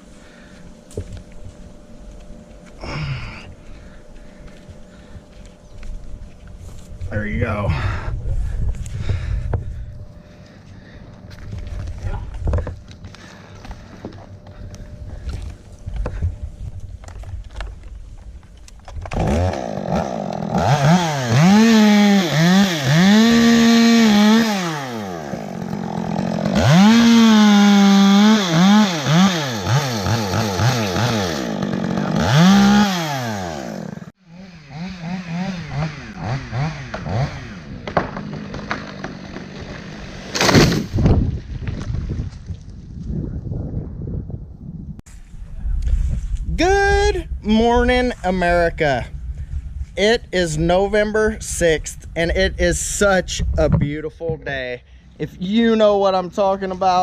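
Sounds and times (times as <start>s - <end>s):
chainsaw cutting wood: 18.9s - 42.2s.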